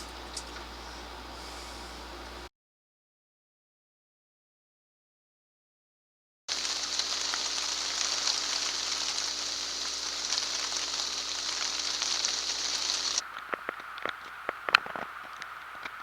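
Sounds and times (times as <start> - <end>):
steady rain falling: 6.5 - 16.0
water drips: 6.5 - 16.0.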